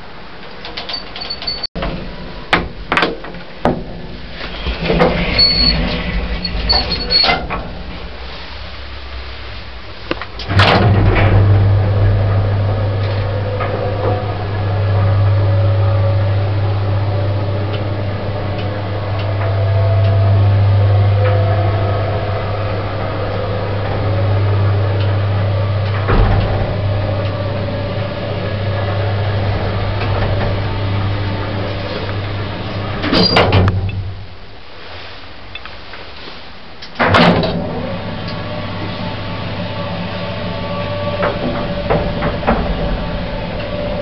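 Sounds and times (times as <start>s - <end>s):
lift motor hum: 0.0s - 35.9s, 36.8s - 44.0s
lift clatter: 0.6s - 8.9s, 10.0s - 34.3s, 36.9s - 44.0s.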